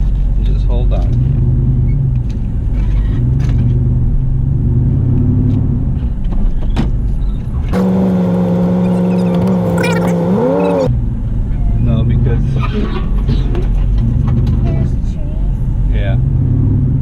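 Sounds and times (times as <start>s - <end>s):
truck engine and road rumble: 0.0s - 17.0s
steady engine drone: 7.4s - 16.8s.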